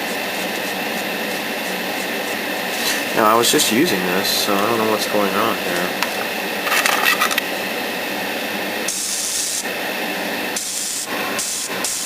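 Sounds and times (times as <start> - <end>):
airbrush sputtering: 0.0 - 6.1, 8.9 - 9.7, 10.5 - 12.0
airbrush spraying hiss: 0.4 - 3.7, 8.9 - 9.7, 10.5 - 12.0.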